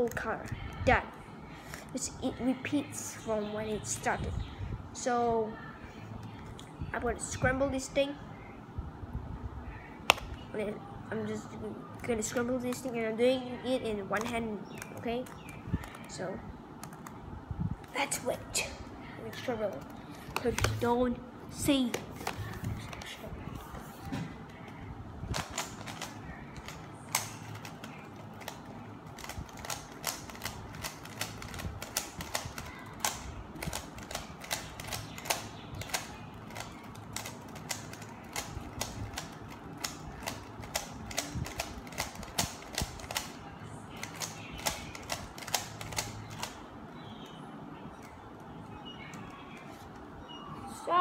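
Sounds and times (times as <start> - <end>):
puzzle cube clicking: 25.3 - 43.4, 44.0 - 46.6.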